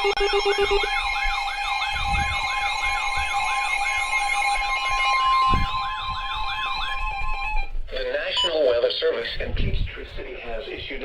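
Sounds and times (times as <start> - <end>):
fast siren-like warble: 0.0 - 7.8
two-tone alert signal: 8.4 - 8.6.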